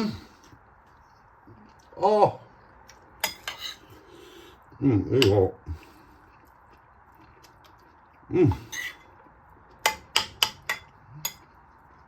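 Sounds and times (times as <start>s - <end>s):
cutlery clinking on a dish: 3.2s - 3.9s, 8.6s - 9.2s, 9.8s - 11.6s.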